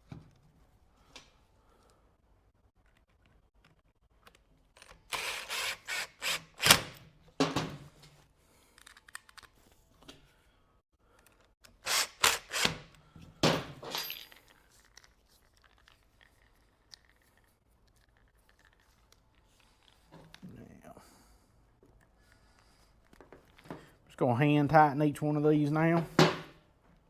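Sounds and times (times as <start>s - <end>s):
metal parts clicking and clattering: 13.8s - 19.0s.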